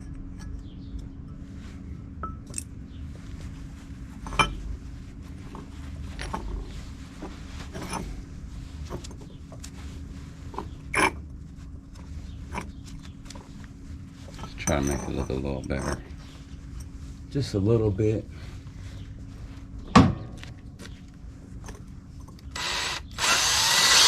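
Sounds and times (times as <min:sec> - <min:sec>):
steady low hum: 0:00.0 - 0:24.0
tools scraping and clicking on metal: 0:10.6 - 0:11.2, 0:14.3 - 0:16.2.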